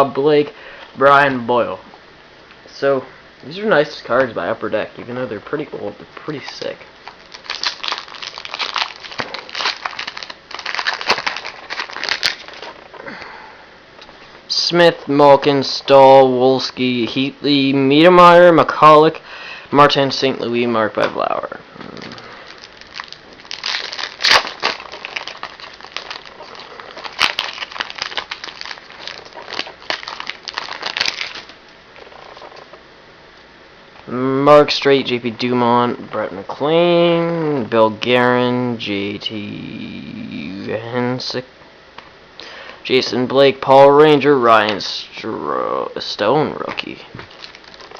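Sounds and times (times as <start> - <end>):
foil wrapper crinkling: 6.3 - 13.0, 21.9 - 32.8, 46.8 - 47.9.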